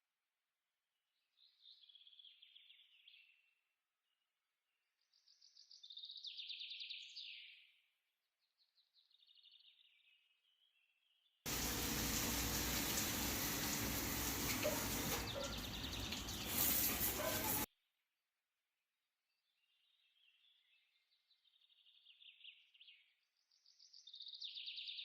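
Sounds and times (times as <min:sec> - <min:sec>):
bird-like chirps and trills: 0:11.6 - 0:17.7.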